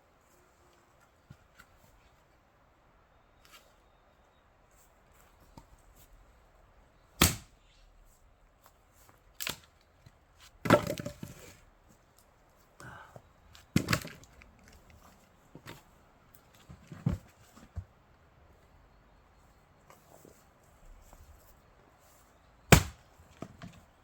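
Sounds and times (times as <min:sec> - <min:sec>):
axe striking wood: 0:07.2 - 0:07.5, 0:10.6 - 0:11.3, 0:22.7 - 0:23.0
wood splitting crackle: 0:07.2 - 0:07.5, 0:10.6 - 0:11.6, 0:13.5 - 0:15.0, 0:22.7 - 0:23.6.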